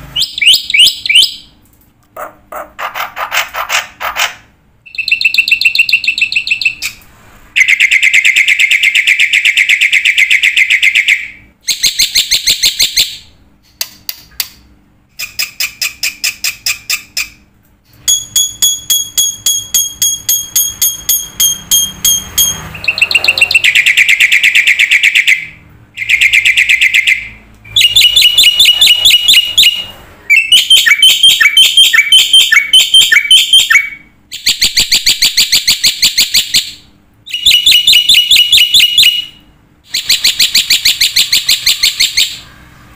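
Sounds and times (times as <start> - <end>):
bird song with rapid trills: 4.9 - 7.0, 18.1 - 42.5.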